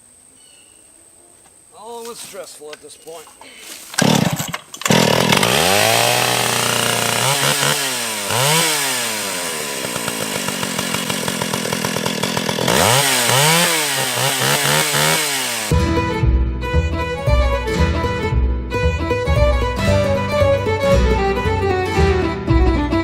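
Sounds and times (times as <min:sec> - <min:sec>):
chainsaw engine revving: 0:03.9 - 0:15.8
fiddle music: 0:15.6 - 0:23.0.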